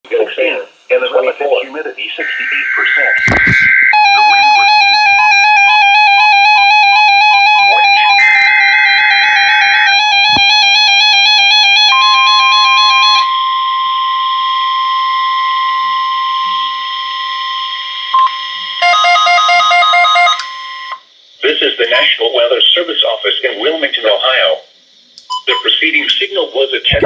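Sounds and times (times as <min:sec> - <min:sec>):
screeching data burst: 0:00.2 - 0:27.0
steady warning alarm tone: 0:01.7 - 0:21.1
warbling electronic tones: 0:02.0 - 0:21.0.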